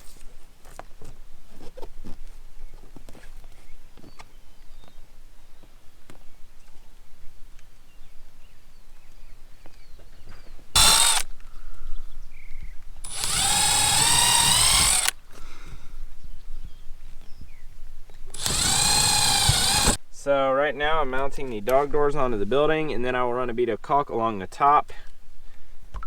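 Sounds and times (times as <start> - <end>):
power drill whining: 10.7 - 11.3, 13.0 - 15.2, 18.3 - 20.0.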